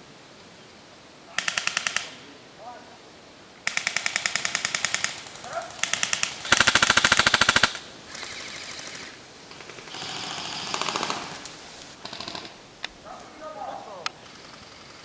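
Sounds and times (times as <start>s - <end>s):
airsoft gun bursts: 1.4s - 2.2s, 3.6s - 12.6s.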